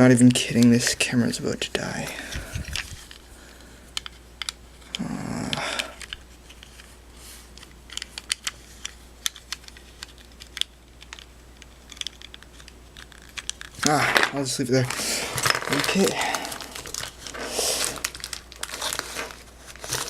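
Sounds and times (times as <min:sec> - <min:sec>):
plastic toy parts clicking: 0:04.0 - 0:06.8, 0:07.6 - 0:14.0.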